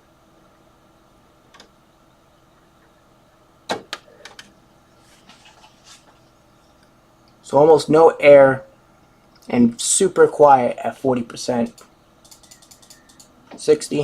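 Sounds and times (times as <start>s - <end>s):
computer fans humming: 0.0s - 14.0s
sharp clicks and knocks: 11.7s - 13.6s.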